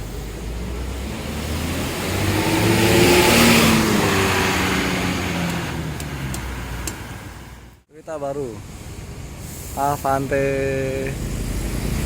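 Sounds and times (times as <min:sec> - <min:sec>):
bus engine accelerating past: 0:00.0 - 0:07.8.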